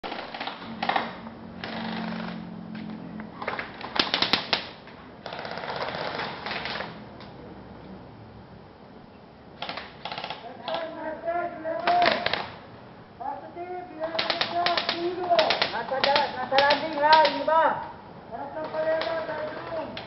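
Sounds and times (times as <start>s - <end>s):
airsoft guns firing bursts: 0.0s - 2.4s, 3.4s - 6.9s, 9.6s - 11.0s, 11.8s - 12.6s, 14.0s - 17.5s, 18.6s - 20.0s.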